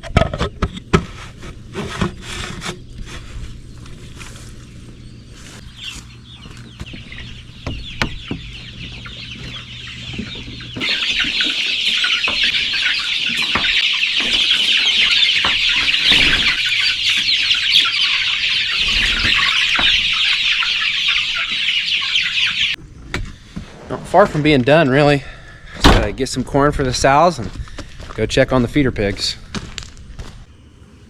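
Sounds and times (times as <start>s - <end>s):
chicks peeping: 2.0s - 22.8s.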